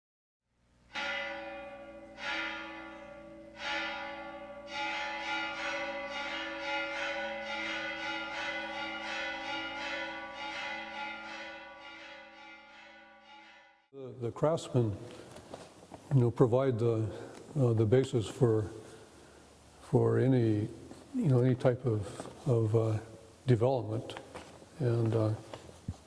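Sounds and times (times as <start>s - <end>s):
large bell ringing: 0.9s - 14.3s.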